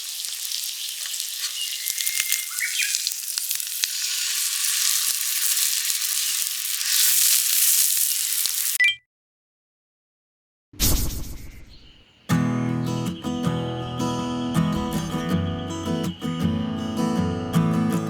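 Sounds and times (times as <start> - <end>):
meat sizzling over a fire: 0.0 - 8.8.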